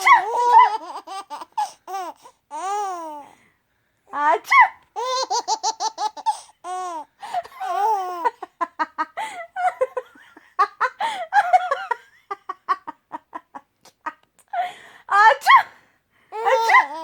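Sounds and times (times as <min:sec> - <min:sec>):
baby laughing: 0:00.0 - 0:03.2, 0:04.6 - 0:08.6, 0:16.4 - 0:17.0.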